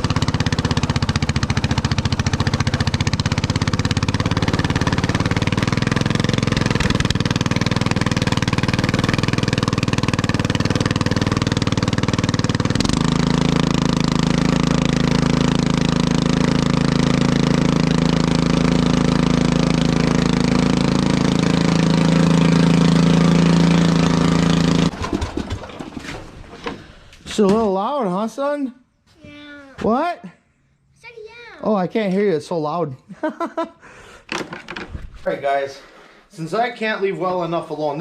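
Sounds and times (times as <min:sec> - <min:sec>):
loud lawnmower engine running: 0:00.0 - 0:26.4.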